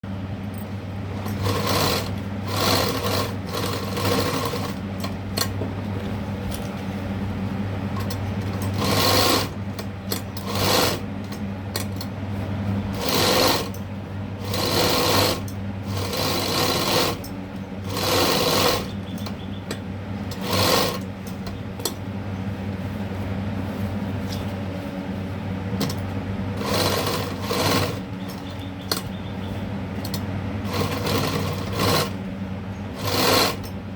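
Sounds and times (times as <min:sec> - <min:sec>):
sewing machine stitching: 0:01.2 - 0:04.8, 0:08.6 - 0:11.1, 0:13.0 - 0:13.8, 0:14.4 - 0:19.2, 0:20.3 - 0:21.1, 0:26.6 - 0:29.0, 0:30.0 - 0:32.2, 0:33.0 - 0:33.7.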